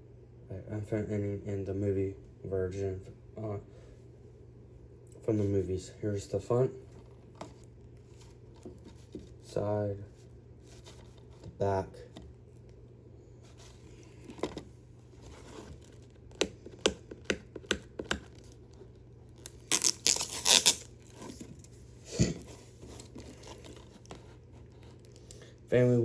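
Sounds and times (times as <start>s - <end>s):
plastic case clicks and taps: 16.3s - 18.3s
plastic wrapping crinkling tear: 18.3s - 21.7s.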